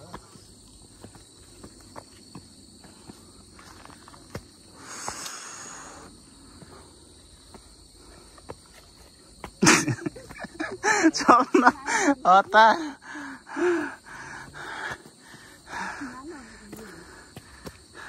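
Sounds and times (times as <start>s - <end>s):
high-pitched insect drone: 0.0s - 9.0s
footsteps on a trail: 0.0s - 18.0s.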